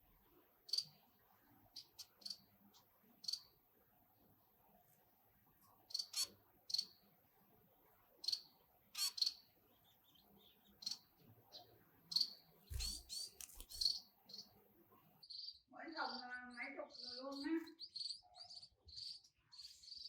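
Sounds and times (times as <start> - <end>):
nestling birds cheeping: 8.2 - 14.6, 15.2 - 20.0.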